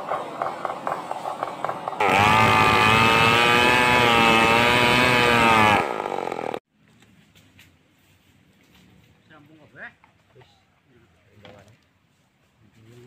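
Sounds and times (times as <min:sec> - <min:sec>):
chainsaw revving: 0:00.0 - 0:06.6.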